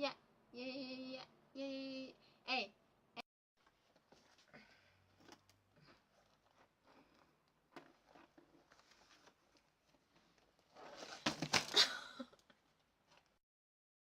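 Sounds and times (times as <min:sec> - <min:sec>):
rustling and handling noises: 0:03.6 - 0:13.4.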